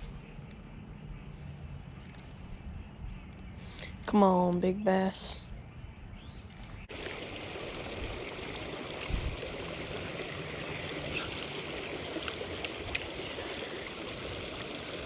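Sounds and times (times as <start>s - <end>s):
rushing water: 6.9s - 15.0s.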